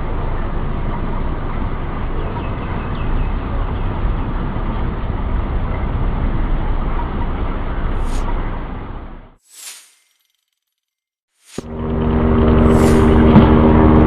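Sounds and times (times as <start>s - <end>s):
low rumbling background noise: 0.0s - 9.4s.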